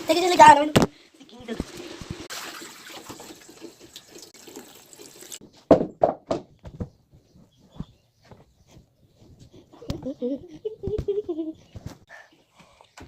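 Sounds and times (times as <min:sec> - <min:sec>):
running water hiss: 0:00.0 - 0:05.4
sharp knocks: 0:05.7 - 0:06.9.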